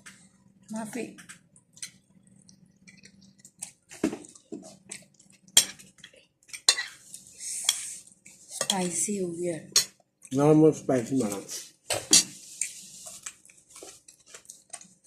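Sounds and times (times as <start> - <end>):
cutlery clinking on plates: 11.9 - 12.4.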